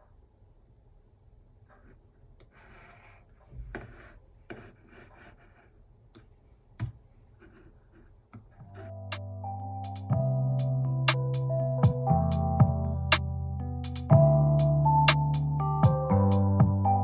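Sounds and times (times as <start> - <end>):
short scraping rubs: 1.7 - 9.0.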